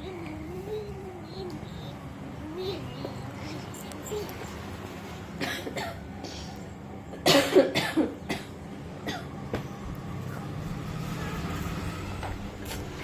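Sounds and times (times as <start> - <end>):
woman coughing: 5.4 - 6.0, 7.2 - 9.3
baby coughing: 5.4 - 6.4, 7.2 - 9.4.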